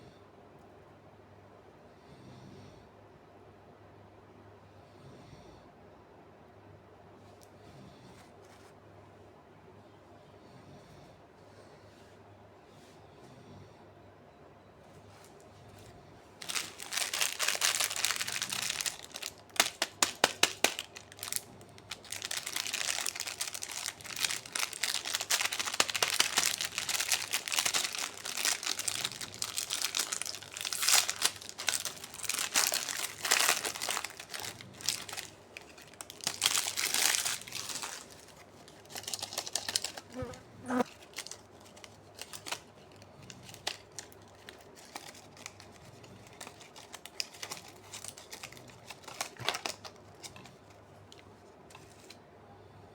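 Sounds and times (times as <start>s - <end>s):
plastic wrappers crinkling: 15.1s - 52.2s.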